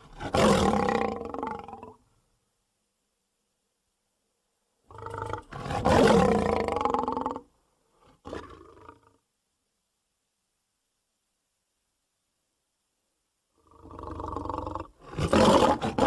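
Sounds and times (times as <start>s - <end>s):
lion roaring: 0.1s - 2.0s, 4.9s - 7.4s, 13.7s - 16.0s.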